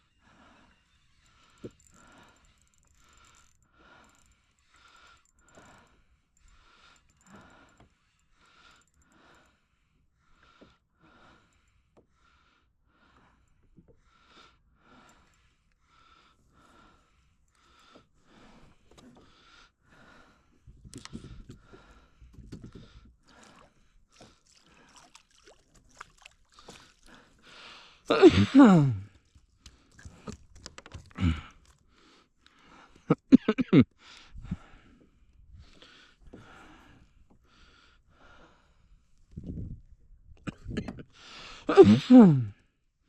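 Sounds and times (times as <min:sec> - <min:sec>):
man coughing hard: 0:28.1 - 0:29.0, 0:33.1 - 0:33.9, 0:40.5 - 0:41.0, 0:41.7 - 0:42.5.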